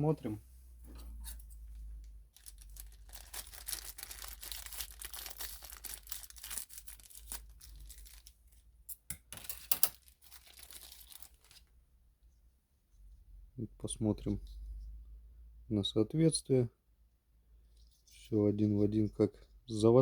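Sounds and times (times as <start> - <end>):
packaging crinkling: 2.3 - 8.4, 9.4 - 11.7.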